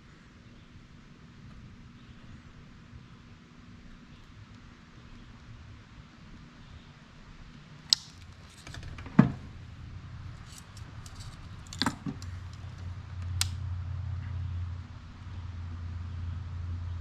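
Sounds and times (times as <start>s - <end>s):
small hard objects clicking: 10.4s - 13.6s.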